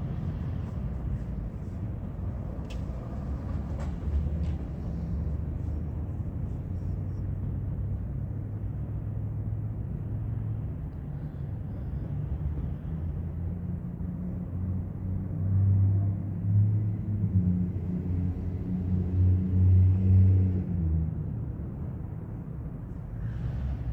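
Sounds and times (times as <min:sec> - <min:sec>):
freight train rumbling past: 0:00.0 - 0:06.8
diesel locomotive engine hum: 0:00.0 - 0:23.9.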